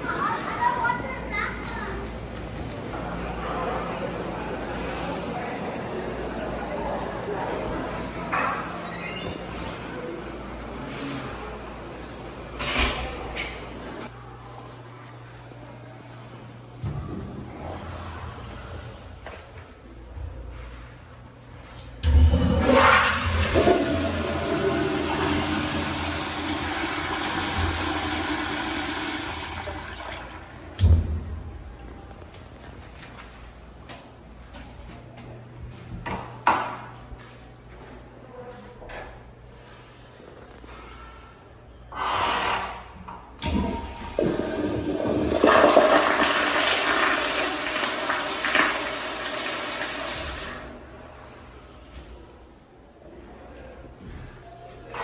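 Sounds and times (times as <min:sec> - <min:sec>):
toilet flushing: 0:22.0 - 0:30.8, 0:43.4 - 0:51.0.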